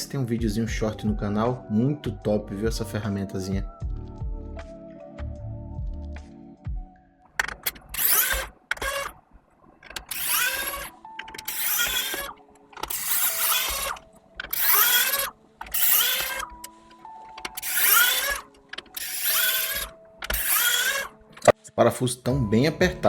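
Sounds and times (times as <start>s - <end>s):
electric screwdriver whirring: 7.6s - 9.2s, 9.9s - 21.6s.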